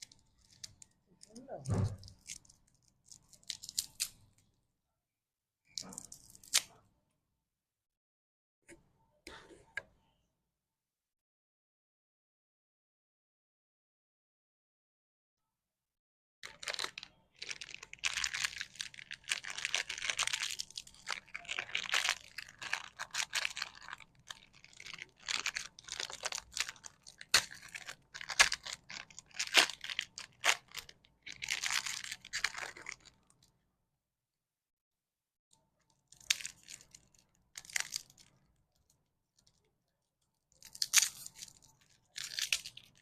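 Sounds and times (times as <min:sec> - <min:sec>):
plastic packets crinkling and tearing: 0:16.4 - 0:33.5, 0:36.1 - 0:39.6, 0:40.6 - 0:43.0.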